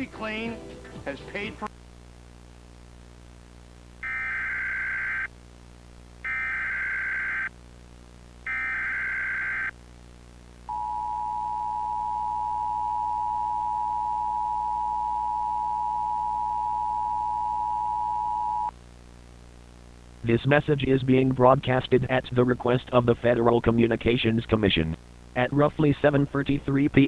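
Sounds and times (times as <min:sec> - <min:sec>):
buzzy data bursts: 0:06.3 - 0:07.5, 0:08.4 - 0:09.7.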